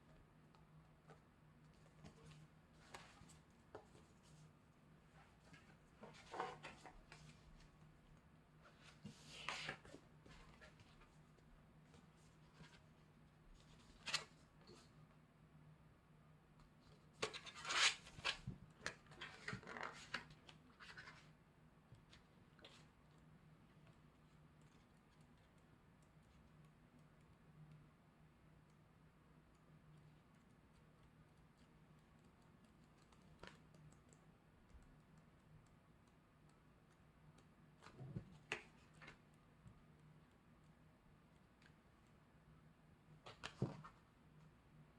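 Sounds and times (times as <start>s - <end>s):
faint steady hum: 0.0s - 44.9s
paper rustling and scraping: 8.7s - 10.8s, 17.2s - 21.3s.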